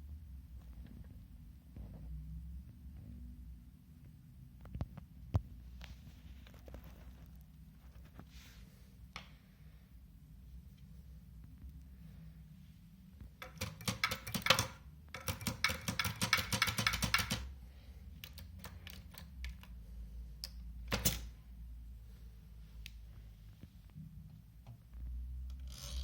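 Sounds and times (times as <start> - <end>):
typewriter keys striking: 13.4 - 17.5, 20.9 - 21.3.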